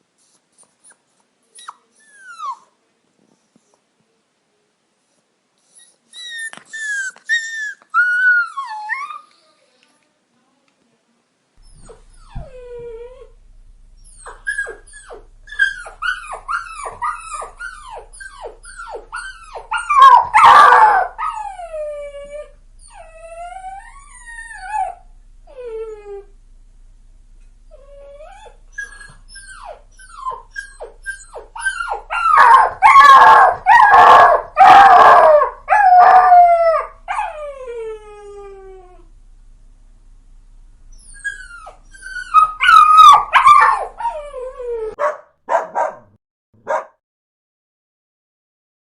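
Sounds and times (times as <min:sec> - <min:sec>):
puppy yelping and whining: 0:05.7 - 0:09.4, 0:11.6 - 0:13.3, 0:14.0 - 0:26.3, 0:27.7 - 0:39.0, 0:40.9 - 0:46.0.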